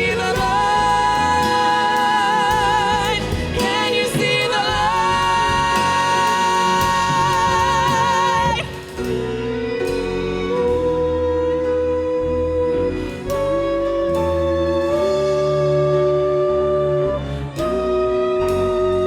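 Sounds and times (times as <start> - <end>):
live band with strings: 0.0 - 19.0
person singing held notes with vibrato: 0.0 - 19.0.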